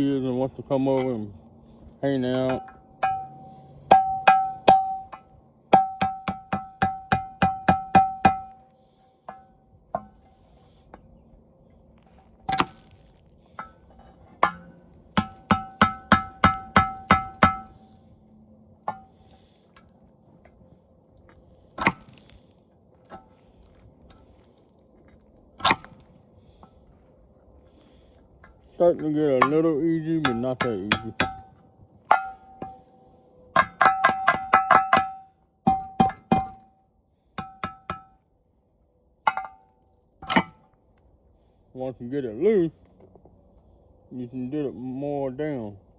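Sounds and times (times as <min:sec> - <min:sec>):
metal tool knocking on metal: 0:02.5 - 0:05.2, 0:05.8 - 0:08.5, 0:14.4 - 0:17.7, 0:33.6 - 0:36.6, 0:39.3 - 0:39.6.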